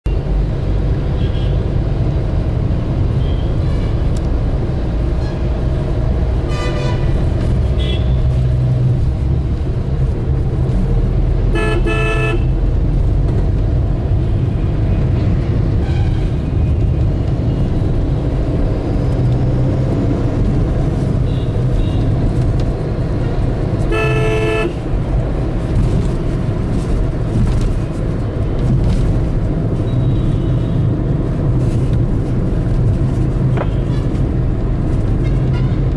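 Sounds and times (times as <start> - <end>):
road traffic rumble: 0.0 - 35.9
vehicle horns honking: 6.4 - 7.2, 7.8 - 8.2, 11.5 - 12.6, 23.8 - 24.8, 35.2 - 35.9.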